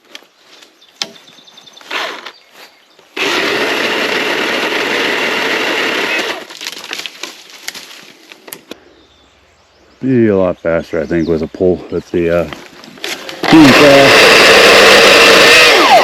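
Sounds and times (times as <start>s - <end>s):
electric saw cutting branch: 1.8s - 2.3s, 3.2s - 6.5s, 13.1s - 16.0s
branches snapping: 6.2s - 8.8s, 12.5s - 14.5s.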